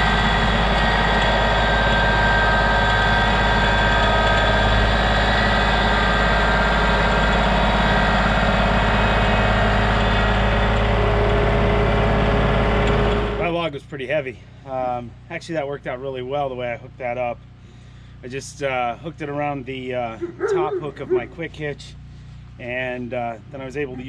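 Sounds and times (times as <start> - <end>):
tractor engine running: 0.0 - 13.6.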